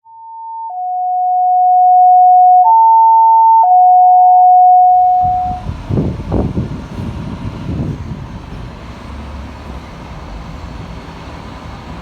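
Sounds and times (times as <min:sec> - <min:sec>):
electronic alert tones: 0:01.0 - 0:05.6.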